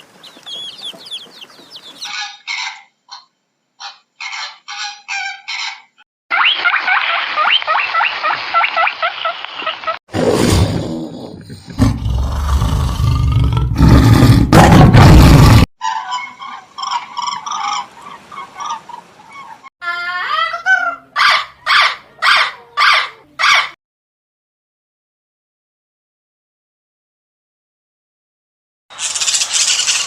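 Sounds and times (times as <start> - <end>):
chorus of chirping birds: 0.0 - 3.2
big cat roaring: 10.1 - 15.7.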